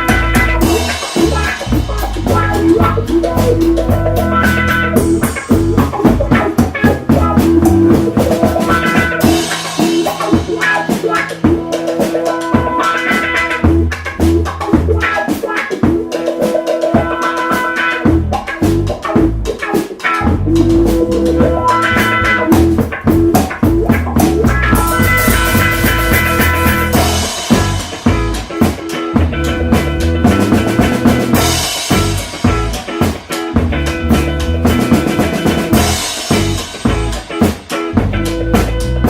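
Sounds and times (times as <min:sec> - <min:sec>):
drum kit steady beat: 0:00.0 - 0:39.0
funk-rock band jam: 0:00.0 - 0:39.0.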